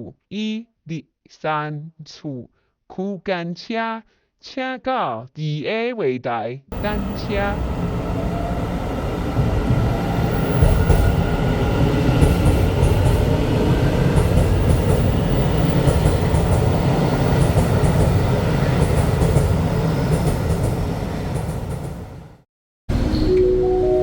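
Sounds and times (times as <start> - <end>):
train rumbling: 6.7 - 23.2
wheels clicking over rail joints: 6.8 - 22.2.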